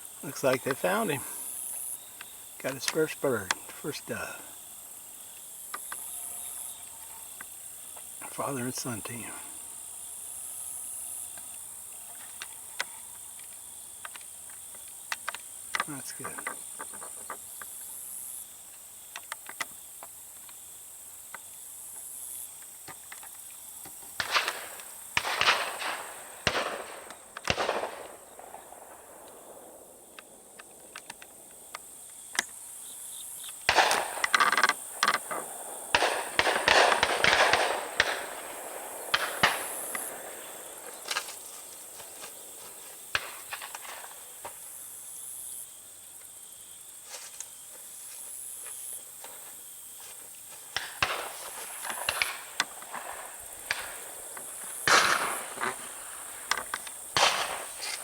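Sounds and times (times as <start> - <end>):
high insect drone: 0.0 - 58.0
shotgun shots with echo: 24.2 - 29.7, 33.7 - 34.4, 35.9 - 40.9, 54.8 - 56.0, 57.2 - 58.0.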